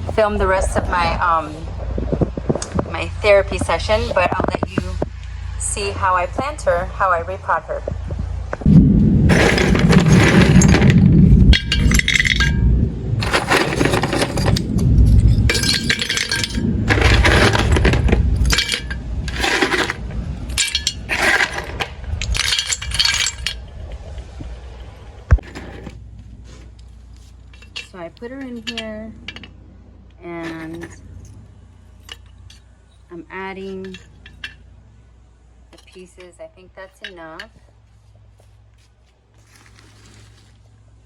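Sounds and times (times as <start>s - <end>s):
pot shards crunching and clinking: 9.3s - 23.7s, 27.4s - 29.6s, 30.4s - 33.0s, 33.7s - 34.7s.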